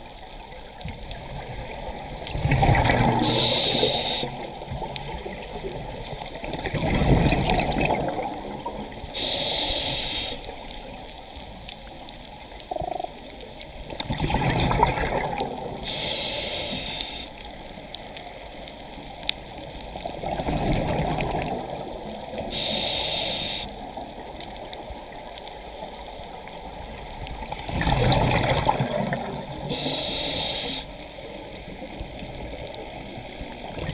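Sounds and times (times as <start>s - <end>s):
bubbling exhaled air: 1.6s - 5.5s, 6.3s - 10.5s, 13.9s - 17.4s, 20.1s - 23.8s, 27.4s - 30.9s
regulator inhalation hiss: 3.1s - 4.6s, 9.1s - 11.0s, 15.8s - 17.4s, 22.4s - 23.9s, 29.6s - 31.1s.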